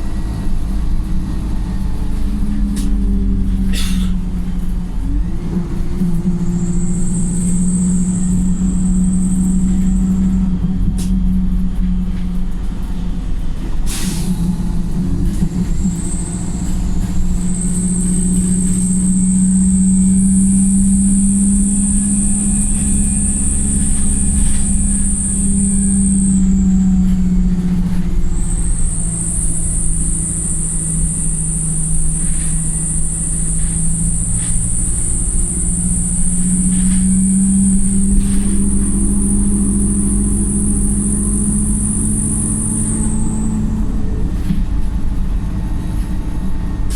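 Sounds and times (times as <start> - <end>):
bus engine droning: 0.0 - 46.9
brief air hiss: 3.7 - 4.2, 13.9 - 14.4.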